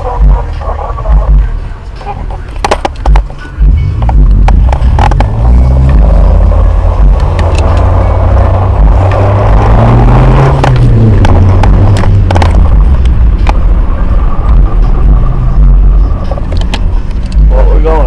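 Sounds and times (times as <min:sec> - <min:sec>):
car engine and road noise: 0:00.0 - 0:18.0
sharp clicks and knocks: 0:02.3 - 0:06.0, 0:07.0 - 0:09.8, 0:10.4 - 0:13.7, 0:16.2 - 0:17.5.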